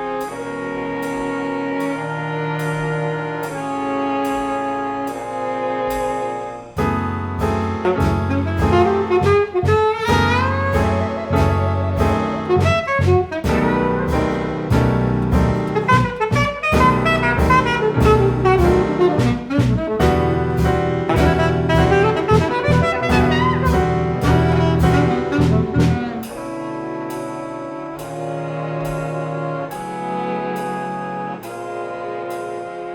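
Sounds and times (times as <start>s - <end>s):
brass: 0.0s - 32.9s
jazz band playing: 0.0s - 32.9s
drums: 2.6s - 32.8s
alto saxophone runs: 7.8s - 14.2s, 15.8s - 26.6s.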